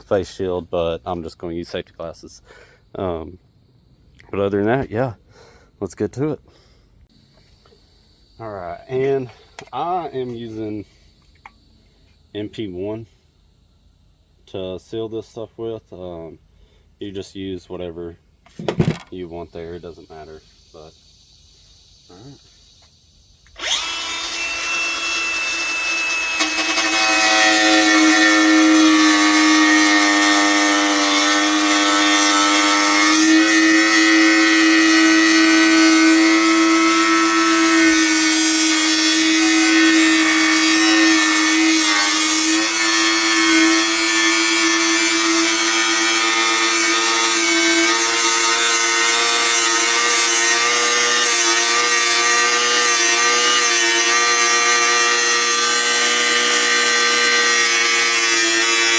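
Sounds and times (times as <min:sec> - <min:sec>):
angle grinder cutting: 0:23.4 - 0:58.9.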